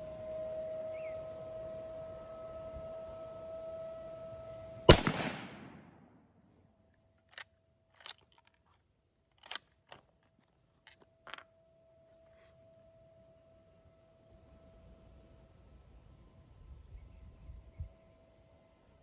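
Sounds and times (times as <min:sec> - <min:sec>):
rifle shot: 0:04.9 - 0:06.2
rifle bolt clicking: 0:09.4 - 0:10.0.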